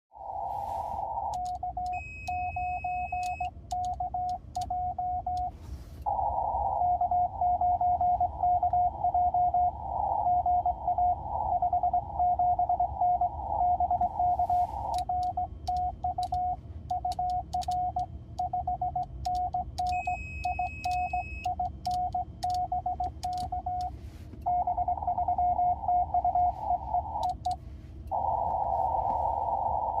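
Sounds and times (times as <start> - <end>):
receiver hiss: 0.2 - 2.0, 8.2 - 15.4, 23.1 - 30.0
static clicks: 0.4 - 6.2, 13.5 - 25.2, 26.0 - 30.0
morse code tone: 0.4 - 30.0.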